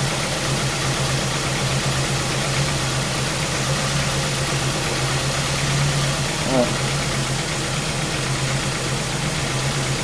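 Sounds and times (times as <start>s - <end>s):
car engine idling unevenly: 0.0s - 10.0s.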